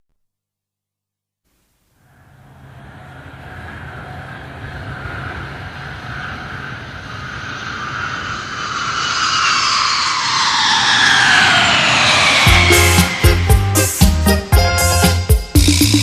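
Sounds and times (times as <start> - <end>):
jet whoosh rising in pitch: 3.8 - 15.4
music with heavy beat: 12.5 - 16.0.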